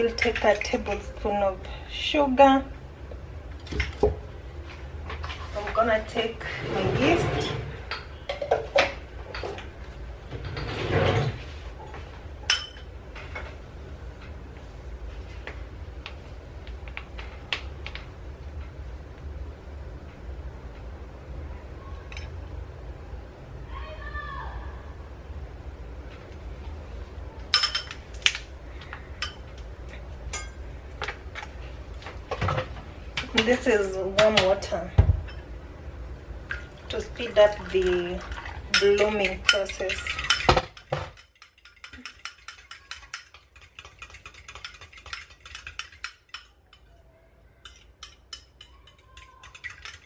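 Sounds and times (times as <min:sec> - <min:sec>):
spoon clinking on bowl: 0:12.5 - 0:12.9, 0:27.6 - 0:28.0, 0:29.2 - 0:29.4, 0:30.3 - 0:30.6, 0:38.7 - 0:46.9, 0:47.6 - 0:50.0.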